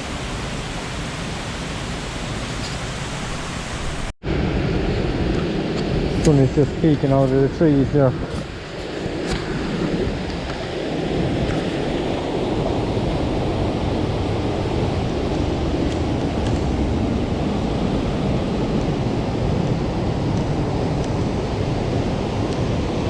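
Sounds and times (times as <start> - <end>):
waterfall rushing: 0.0 - 4.1.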